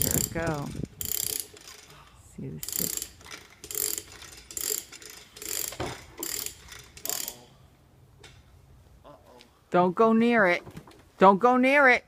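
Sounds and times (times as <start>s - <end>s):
hand winch ratcheting: 0.0s - 2.0s, 2.6s - 7.5s.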